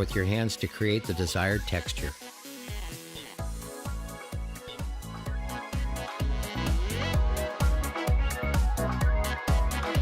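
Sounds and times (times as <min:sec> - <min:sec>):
electronic dance music: 0:00.1 - 0:10.0.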